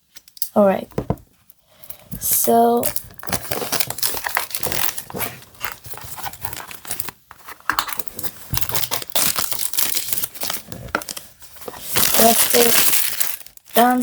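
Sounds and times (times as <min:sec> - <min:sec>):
plastic wrap crinkling: 0:02.8 - 0:14.0.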